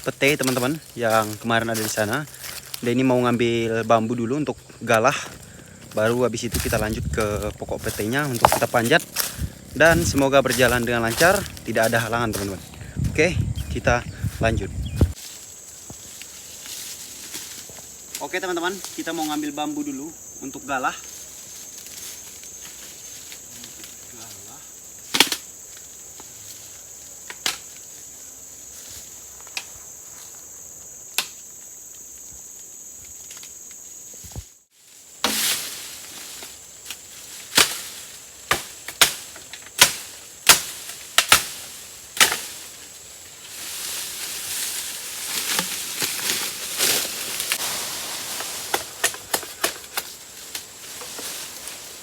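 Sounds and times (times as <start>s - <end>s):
high insect drone: 0.0s - 52.0s
bamboo being chopped: 7.8s - 9.4s, 25.1s - 25.5s, 27.3s - 27.8s, 31.2s - 31.4s, 35.2s - 42.7s, 45.2s - 51.4s
noisy hiss: 34.2s - 52.0s.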